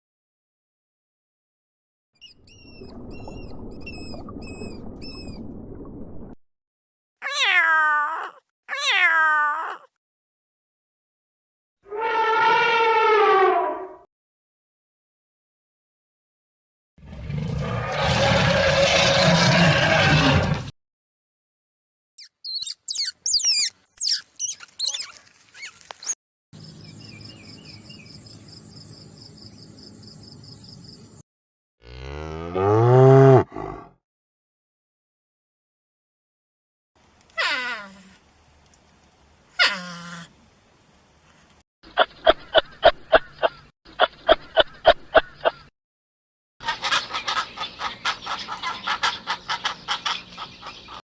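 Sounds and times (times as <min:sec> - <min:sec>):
cow mooing: 0:31.8 - 0:33.9.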